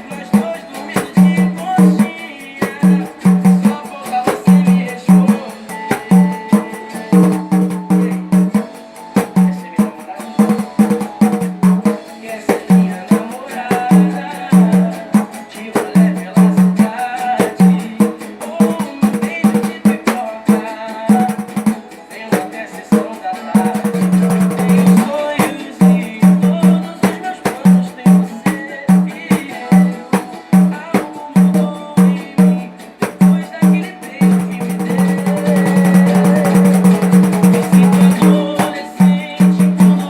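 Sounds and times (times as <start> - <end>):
pandeiro rhythm: 0.0 - 40.0
recorded song with singing: 0.0 - 40.0.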